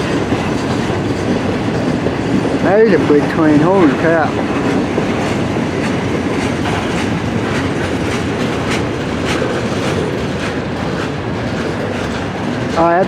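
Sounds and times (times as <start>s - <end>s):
freight train rumbling past: 0.0s - 13.0s
train wheels clacking: 0.0s - 13.0s.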